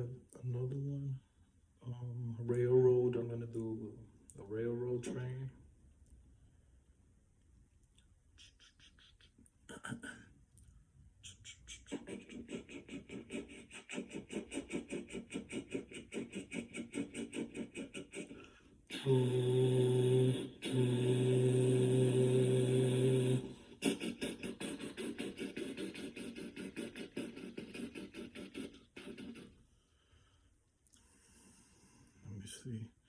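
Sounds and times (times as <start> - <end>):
man imitating train chugging: 11.2 - 29.5.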